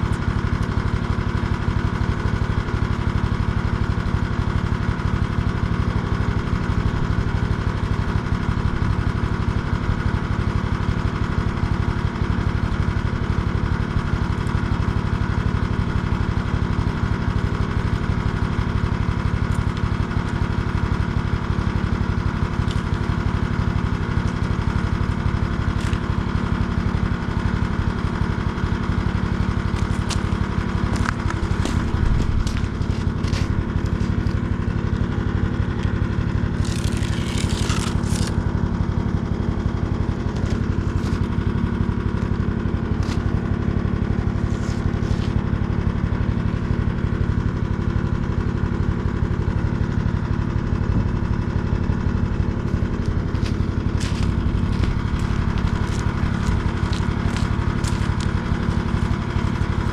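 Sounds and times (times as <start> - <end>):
engine running: 0.0 - 59.9.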